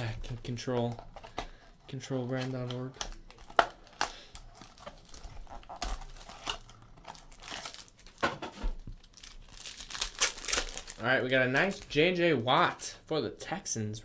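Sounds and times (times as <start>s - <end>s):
wrapper being torn and crinkled: 2.4s - 8.2s, 9.0s - 12.0s.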